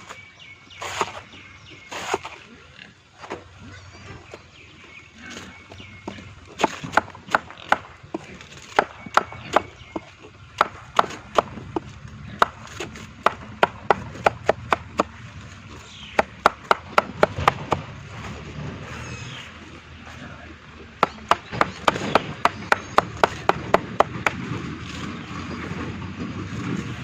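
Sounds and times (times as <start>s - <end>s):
sharp knocks or chops: 6.1s - 15.2s, 16.2s - 18.0s, 21.0s - 24.6s.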